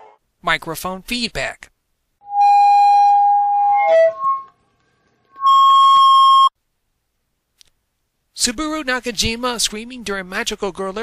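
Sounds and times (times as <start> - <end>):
microphone feedback howl: 2.2 - 4.5, 5.4 - 6.5.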